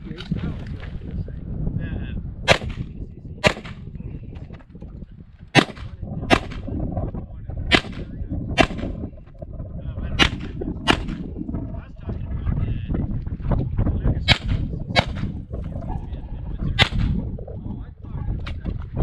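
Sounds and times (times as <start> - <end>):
pistol shots: 2.5 - 3.9, 5.6 - 6.7, 7.7 - 8.9, 10.2 - 11.3, 14.3 - 15.3, 16.8 - 17.2.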